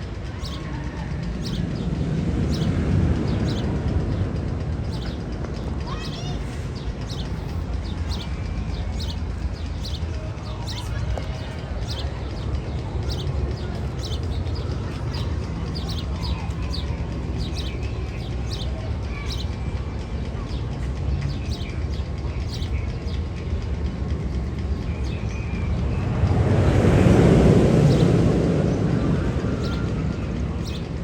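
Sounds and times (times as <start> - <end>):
rushing noise: 23.6 - 31.0.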